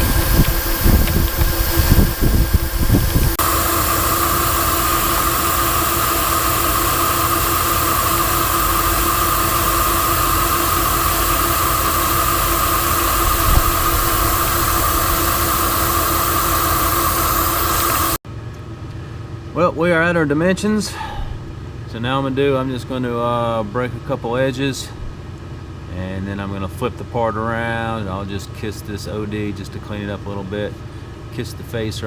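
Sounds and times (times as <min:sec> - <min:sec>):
hissing cutting noise: 0:00.0 - 0:18.2
lathe machine hum: 0:00.0 - 0:18.2.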